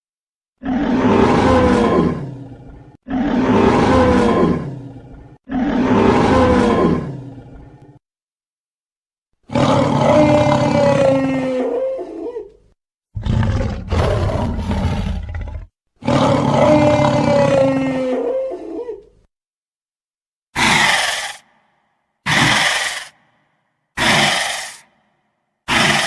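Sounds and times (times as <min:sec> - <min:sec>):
dinosaur roars: 0:00.6 - 0:08.0, 0:09.5 - 0:12.0, 0:13.2 - 0:18.6, 0:20.6 - 0:21.5, 0:22.3 - 0:23.2, 0:25.7 - 0:26.0.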